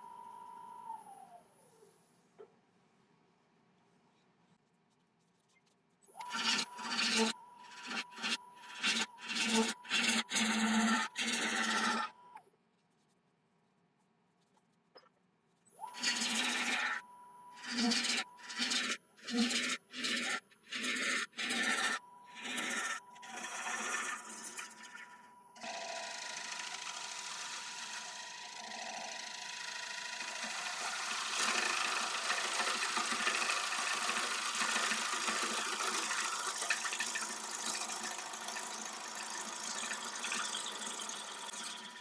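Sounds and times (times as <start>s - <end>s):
wood lathe whine: 6.2s - 12.4s, 15.8s - 42.0s
gouge cutting wooden bowl: 6.3s - 12.1s, 17.6s - 42.0s.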